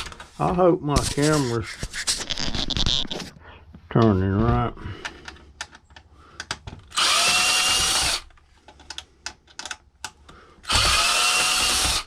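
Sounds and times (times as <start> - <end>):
power drill whining: 6.8 - 8.4, 10.6 - 12.0.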